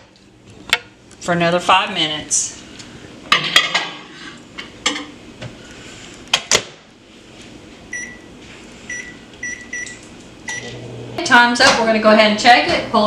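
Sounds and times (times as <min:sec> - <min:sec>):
high keypad beeps: 0:08.9 - 0:10.7.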